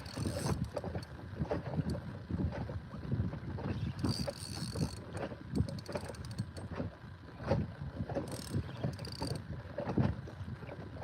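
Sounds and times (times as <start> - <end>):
fishing reel clicking and whirring: 0.0 - 1.1, 3.8 - 6.7, 8.2 - 9.5
water slapping against hull: 0.0 - 11.0.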